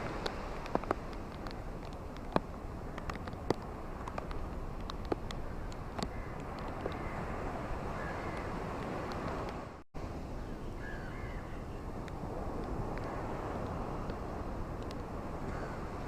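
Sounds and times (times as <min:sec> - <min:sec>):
ocean waves washing on shore: 0:00.0 - 0:16.0
faint bird calls: 0:10.4 - 0:11.9.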